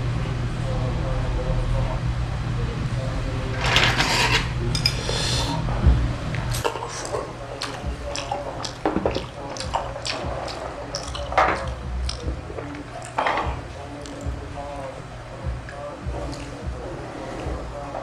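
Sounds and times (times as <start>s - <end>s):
low steady hum: 0.0s - 18.0s
wet mouth eating sounds: 6.4s - 14.4s.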